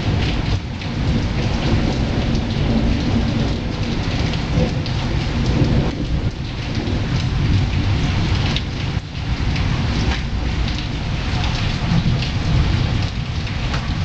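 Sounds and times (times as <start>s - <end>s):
heavy rain: 0.0s - 14.0s
low thunder rumble: 0.0s - 14.0s.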